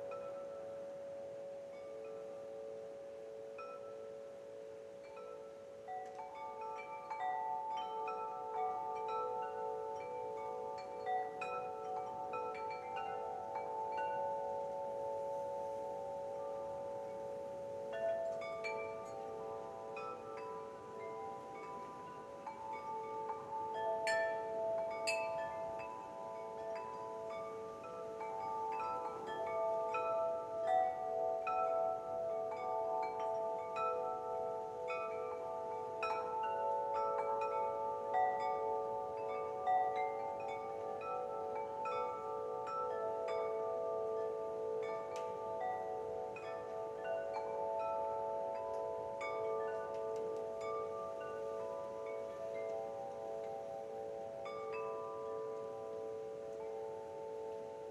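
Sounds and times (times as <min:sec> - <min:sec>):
wind chimes ringing: 0:00.0 - 0:57.9.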